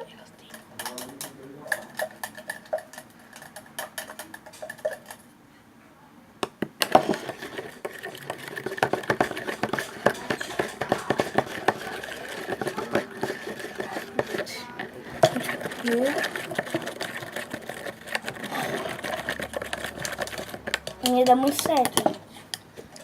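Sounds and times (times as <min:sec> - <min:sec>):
wet slime squelching: 0:06.8 - 0:23.0.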